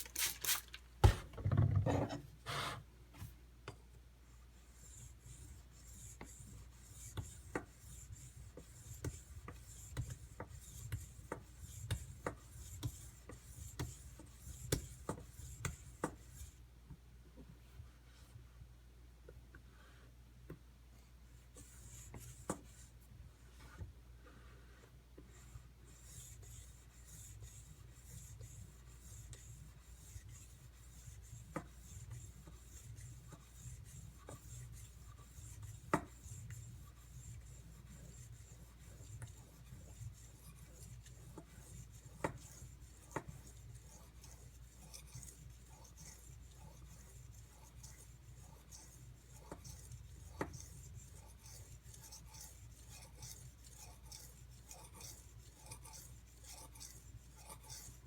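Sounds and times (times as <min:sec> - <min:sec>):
knife scraping on whetstone: 0:43.3 - 0:58.0.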